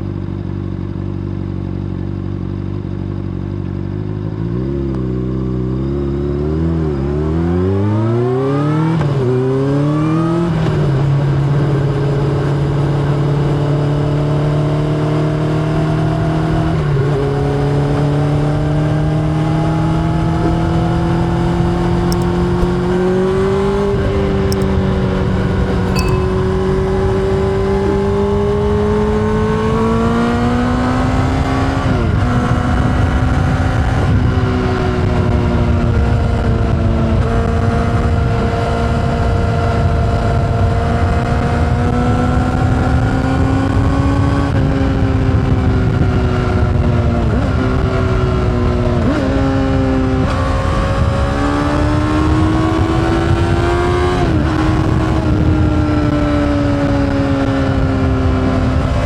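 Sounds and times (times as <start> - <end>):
motorcycle engine shifting gears: 8.7 - 59.0
wind noise: 19.4 - 59.0.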